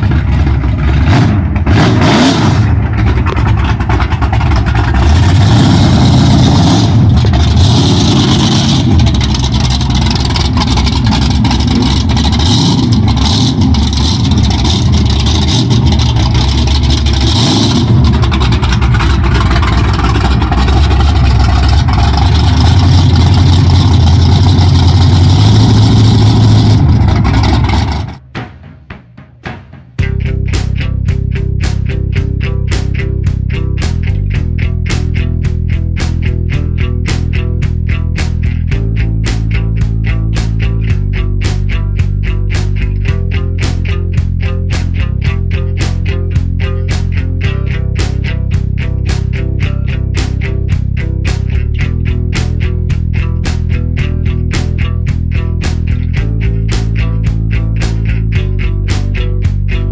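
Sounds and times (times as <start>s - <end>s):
loud car engine revving: 0.0s - 28.2s.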